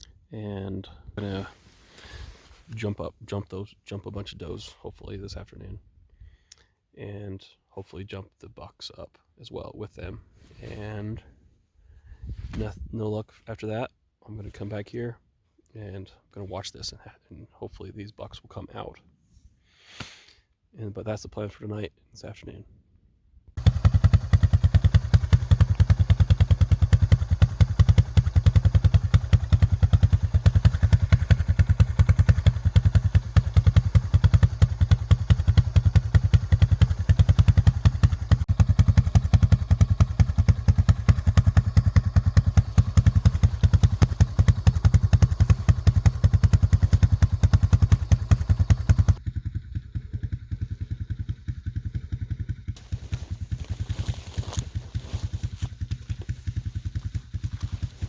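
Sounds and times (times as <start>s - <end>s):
atv engine running: 23.6s - 58.0s
rattle: 23.6s - 58.0s.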